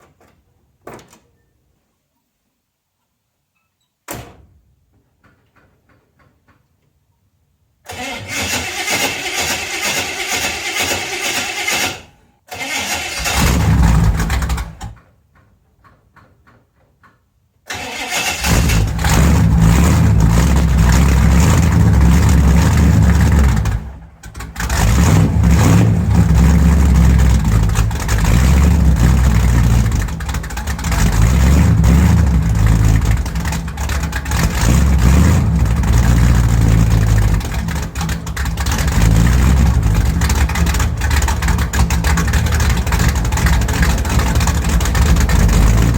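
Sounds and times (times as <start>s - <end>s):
car engine starting and idling: 7.9s - 15.0s, 17.7s - 45.9s
engine throttle blips: 18.1s - 45.9s.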